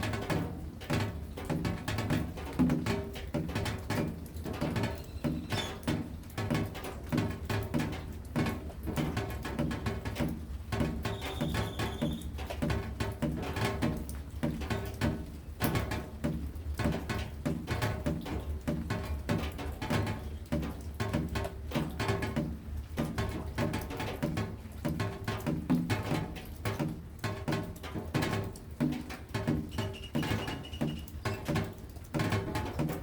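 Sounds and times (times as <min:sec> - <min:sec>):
rain patter: 0:00.0 - 0:33.0
drops plinking on surfaces: 0:29.5 - 0:31.7.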